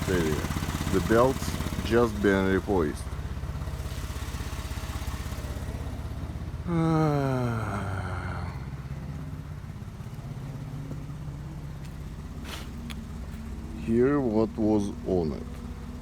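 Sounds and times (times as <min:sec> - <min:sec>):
drive belt howl: 0:00.0 - 0:16.0
engine idling: 0:00.0 - 0:16.0.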